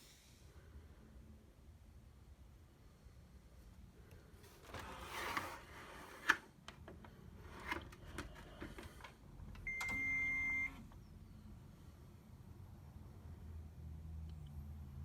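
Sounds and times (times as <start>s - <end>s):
printer beeping: 9.6s - 10.9s.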